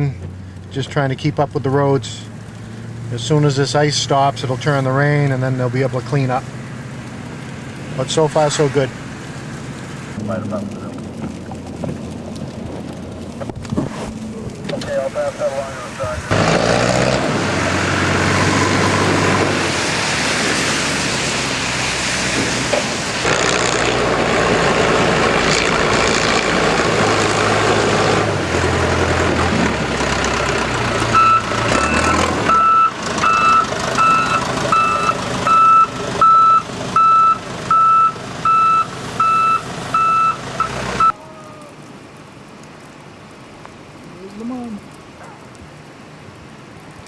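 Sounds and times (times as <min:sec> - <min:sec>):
large vehicle engine running: 0:00.0 - 0:41.2
backup alarm beeping: 0:31.2 - 0:41.2.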